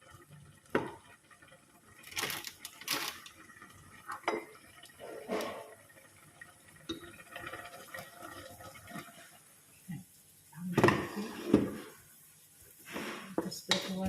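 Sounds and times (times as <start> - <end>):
pots and utensils clinking: 4.0 - 5.8, 10.7 - 12.0, 12.9 - 14.0.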